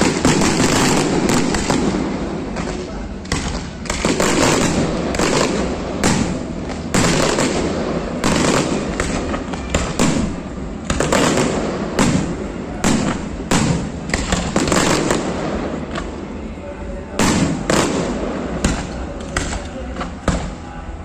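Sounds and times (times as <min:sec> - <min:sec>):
firework shell bursts: 0:00.0 - 0:16.1
crackling rumble: 0:00.0 - 0:20.6.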